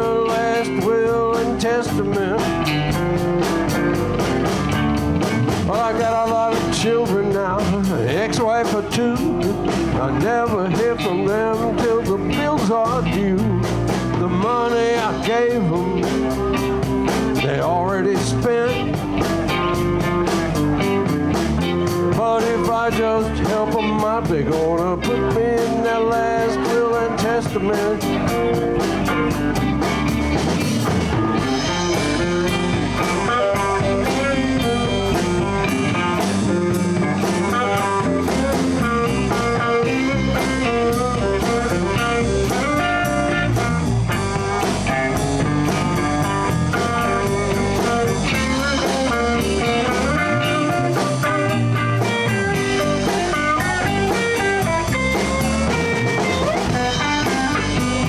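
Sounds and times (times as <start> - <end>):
electric guitar: 0.0 - 58.0
live blues band playing: 0.0 - 58.0.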